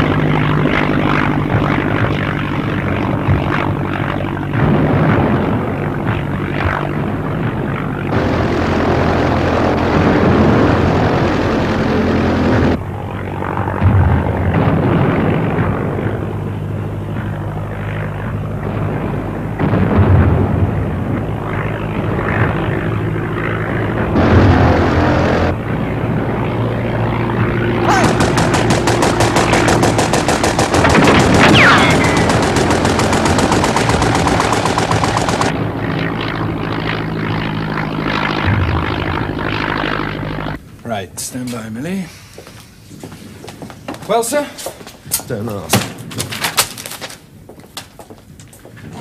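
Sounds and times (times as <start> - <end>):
propeller aeroplane engine droning: 0.0 - 45.7
machine-gun fire: 8.1 - 12.8, 24.2 - 25.5, 27.9 - 35.6.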